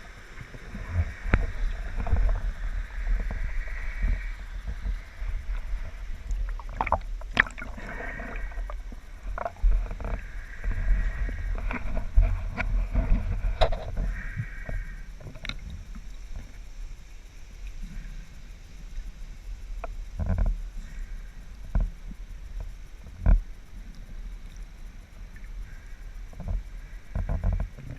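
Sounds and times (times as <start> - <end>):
muffled water movement: 0.0 - 27.9.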